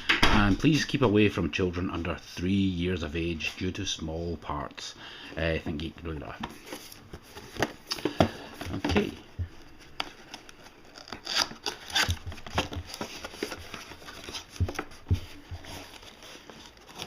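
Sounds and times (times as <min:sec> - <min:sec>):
cardboard packaging crinkling: 0:06.2 - 0:17.0.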